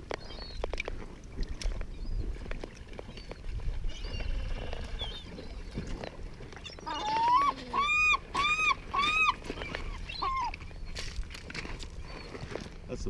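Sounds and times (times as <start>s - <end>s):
faint high bird calls: 3.1s - 11.0s
gull calling: 6.6s - 10.9s.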